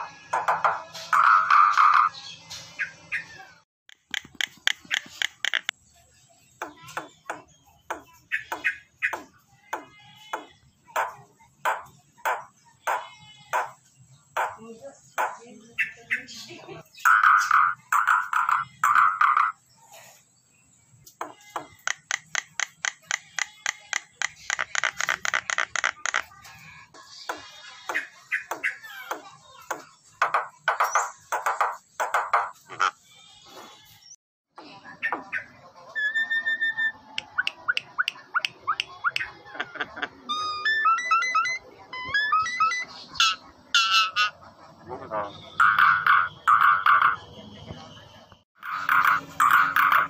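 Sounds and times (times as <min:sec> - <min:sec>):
starling calling: 0:04.1 - 0:05.7, 0:21.2 - 0:26.3, 0:42.3 - 0:44.4, 0:45.5 - 0:47.2, 0:48.6 - 0:50.0.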